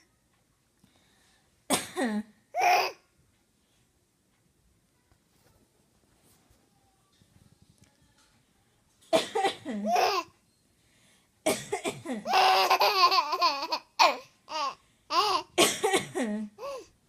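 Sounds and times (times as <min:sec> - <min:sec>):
person fake coughing: 0:15.6 - 0:16.5.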